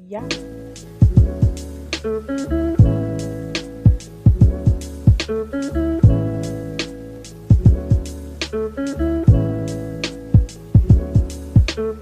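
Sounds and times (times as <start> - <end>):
guitar-led beat: 0.0 - 12.0
thumping kick drum: 1.0 - 1.6, 2.8 - 3.1, 3.8 - 5.3, 6.0 - 6.3, 7.5 - 8.1, 9.3 - 9.6, 10.3 - 11.8.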